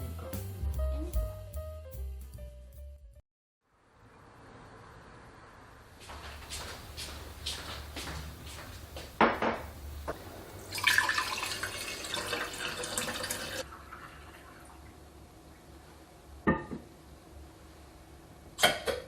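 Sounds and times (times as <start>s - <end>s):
kitchen tap running: 9.6s - 14.6s.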